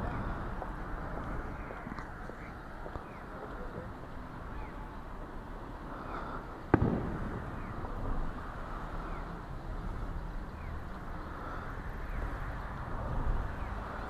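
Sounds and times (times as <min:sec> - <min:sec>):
firework boom with echo: 0:06.7 - 0:09.1.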